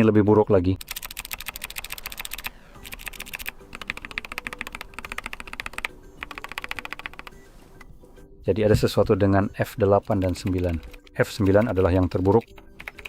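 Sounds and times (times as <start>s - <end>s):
scratchy keyboard key clicks: 0.8s - 7.4s.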